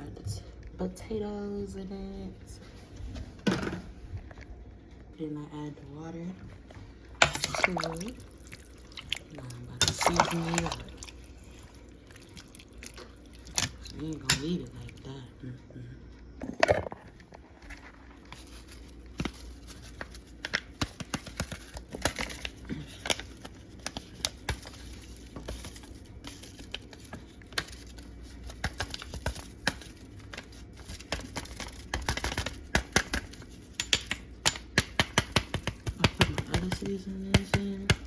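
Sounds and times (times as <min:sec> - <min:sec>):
shaker containers clicking and tapping: 0:18.4 - 0:38.0.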